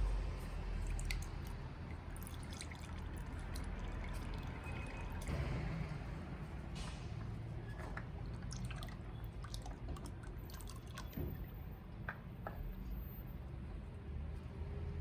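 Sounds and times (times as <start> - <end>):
liquid dripping into container: 0.0 - 6.1, 7.7 - 11.7.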